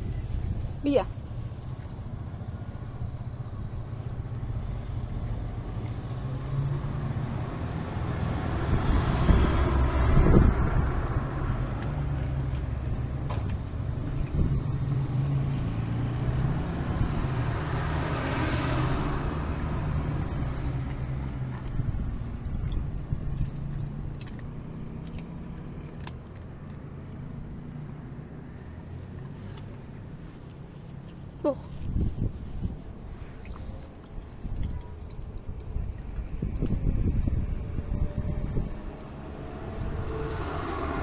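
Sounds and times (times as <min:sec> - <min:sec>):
traffic engine rumble: 0:00.0 - 0:41.0
vehicle passing: 0:00.2 - 0:13.2, 0:13.8 - 0:26.1, 0:36.4 - 0:41.0.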